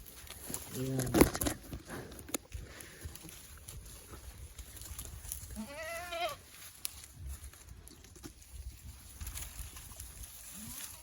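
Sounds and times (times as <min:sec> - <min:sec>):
goat bleating: 0:05.5 - 0:06.5.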